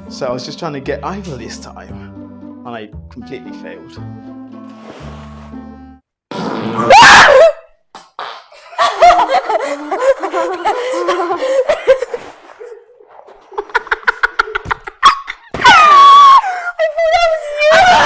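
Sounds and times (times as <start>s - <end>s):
children laughing and giggling: 8.6s - 15.6s.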